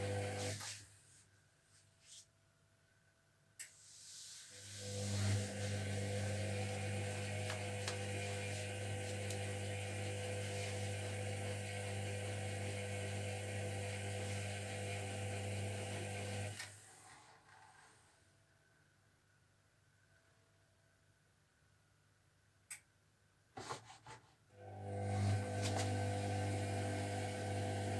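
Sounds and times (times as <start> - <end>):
washing machine humming: 0.0 - 0.6, 4.7 - 16.6, 24.6 - 27.9.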